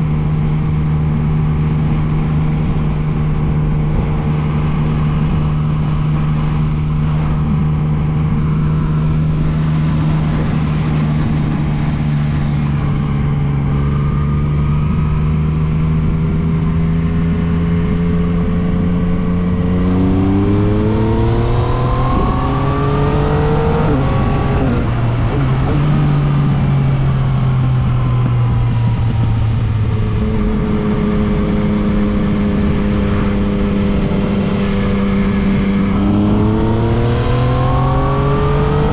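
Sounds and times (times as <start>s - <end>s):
motorcycle engine running: 0.0s - 38.9s.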